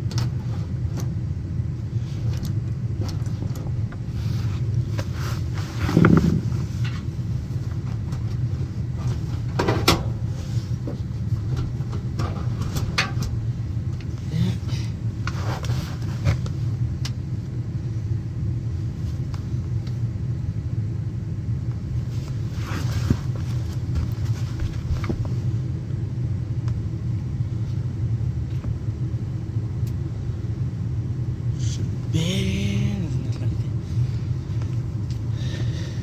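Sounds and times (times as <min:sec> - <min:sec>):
machinery rumbling: 0:01.6 - 0:15.6, 0:31.0 - 0:36.0.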